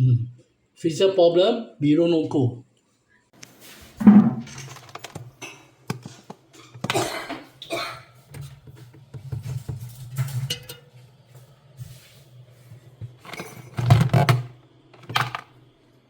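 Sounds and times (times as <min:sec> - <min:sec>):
hard parts clattering: 0:04.0 - 0:05.6, 0:13.1 - 0:15.5.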